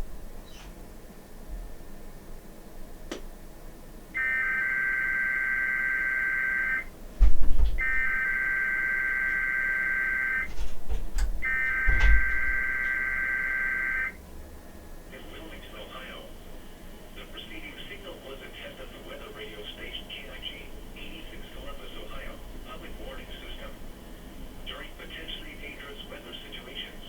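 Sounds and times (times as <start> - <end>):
digital data tone bursts: 4.2 - 6.9, 7.8 - 10.5, 11.4 - 14.2.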